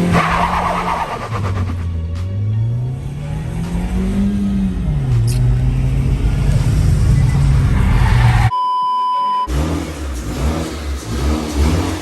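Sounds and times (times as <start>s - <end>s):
car engine running: 0.0s - 2.6s
censor bleep: 8.5s - 9.5s.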